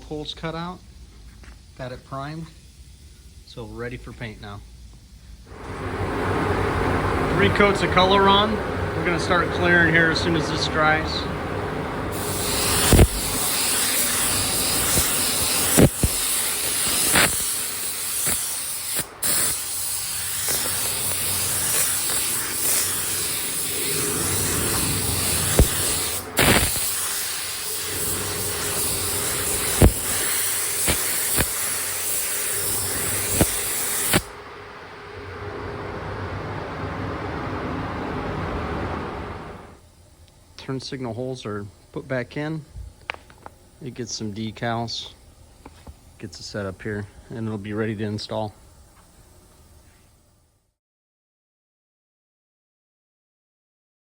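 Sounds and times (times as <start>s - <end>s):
spray gun hissing: 0.6s - 34.4s.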